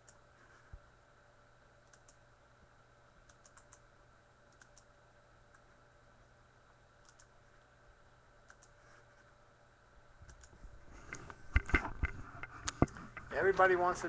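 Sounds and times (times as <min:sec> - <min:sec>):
low steady hum: 0:00.0 - 0:14.0
computer mouse clicks: 0:01.8 - 0:02.2, 0:03.2 - 0:03.8, 0:04.5 - 0:04.9, 0:07.0 - 0:07.3, 0:08.4 - 0:08.8, 0:10.2 - 0:13.3.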